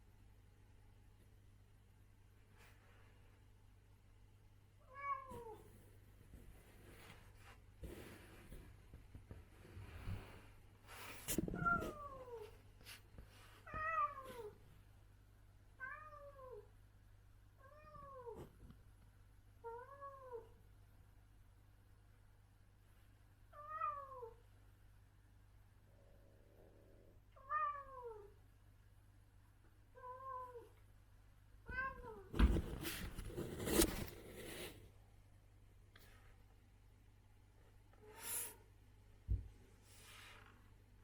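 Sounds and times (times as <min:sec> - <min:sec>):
cat meowing: 0:31.7 - 0:32.3
rustling: 0:32.2 - 0:35.0.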